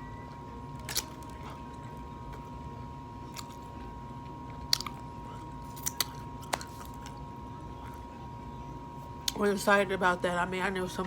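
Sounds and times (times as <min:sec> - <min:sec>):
chewing sandwich: 0:00.7 - 0:08.2.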